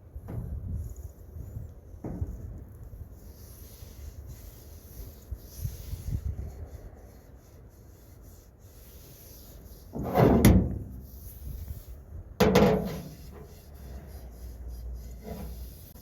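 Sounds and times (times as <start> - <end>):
wooden clunks with scraping: 0.2 - 0.8, 2.0 - 2.9, 9.9 - 11.0, 12.4 - 13.5.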